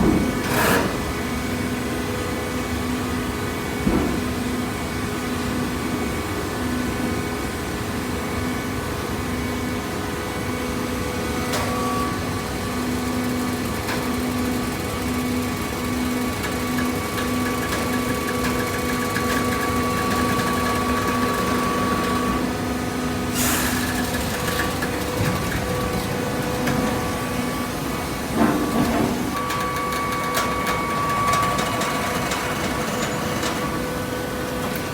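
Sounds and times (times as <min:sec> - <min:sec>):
baler motor and pump hum: 0:00.0 - 0:34.9
hydraulic hiss: 0:23.3 - 0:24.1.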